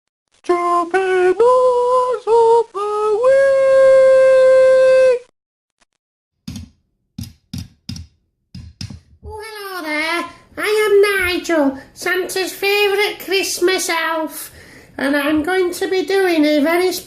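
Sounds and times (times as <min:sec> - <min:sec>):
person humming: 0:00.5 - 0:05.3.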